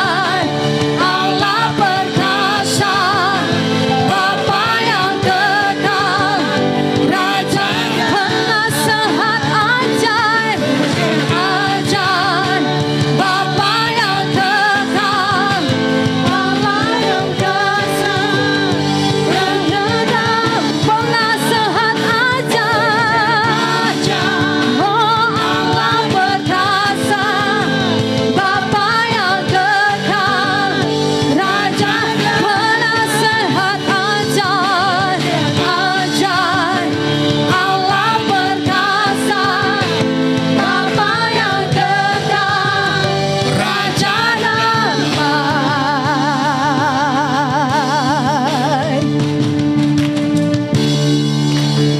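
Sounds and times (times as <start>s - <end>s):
person singing with vibrato: 0.0s - 49.2s
instrumental accompaniment: 0.0s - 51.9s.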